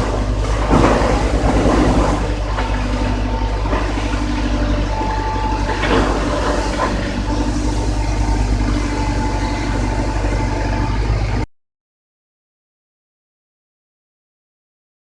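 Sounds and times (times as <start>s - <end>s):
wood chipper running: 0.0s - 11.5s.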